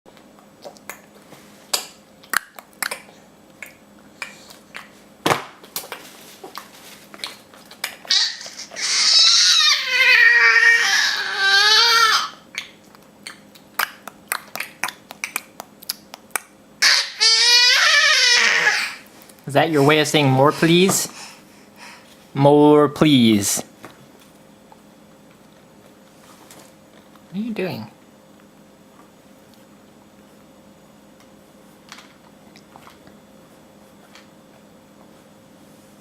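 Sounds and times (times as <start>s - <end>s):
baby babbling squeal: 8.1s - 12.4s, 16.8s - 19.0s
baby tongue clicks: 12.6s - 16.5s.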